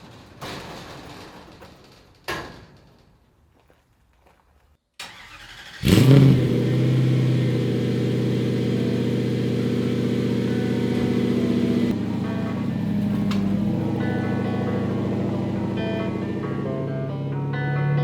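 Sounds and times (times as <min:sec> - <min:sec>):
car engine cranking and idling: 0:05.0 - 0:18.0.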